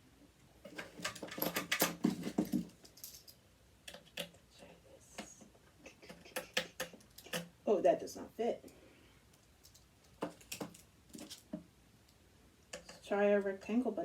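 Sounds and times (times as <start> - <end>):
small metal parts clicking: 0.7 - 4.4, 6.3 - 7.6, 9.3 - 11.5.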